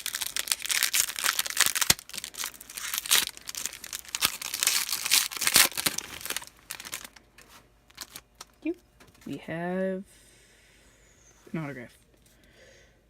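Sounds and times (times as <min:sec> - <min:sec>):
plastic wrapper crackling: 0:00.0 - 0:08.6.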